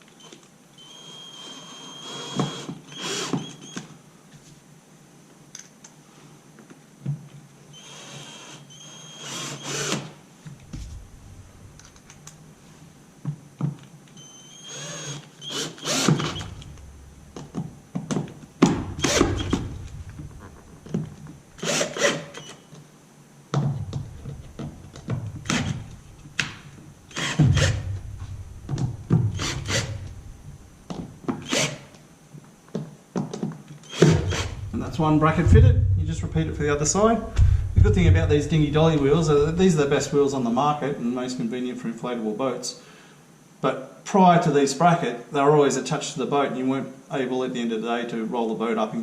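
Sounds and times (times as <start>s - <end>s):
cordless drill motor whine: 0.8s - 3.8s, 7.7s - 10.0s, 14.2s - 16.8s, 18.9s - 19.8s, 29.3s - 30.2s
tool handling knocks and clicks: 23.5s - 30.2s.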